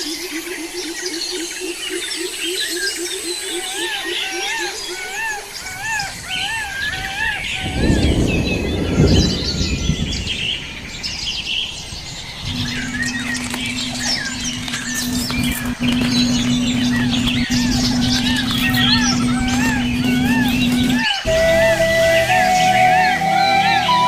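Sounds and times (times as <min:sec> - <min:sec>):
birds chirping and calling: 0:00.0 - 0:24.0
steady low hum: 0:11.9 - 0:24.0.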